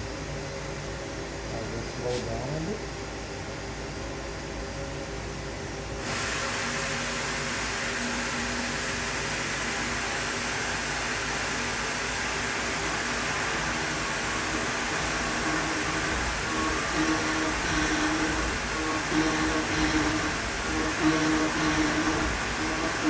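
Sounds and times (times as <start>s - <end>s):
milling machine hiss: 6.0s - 23.0s
faint steady tones: 12.7s - 23.0s.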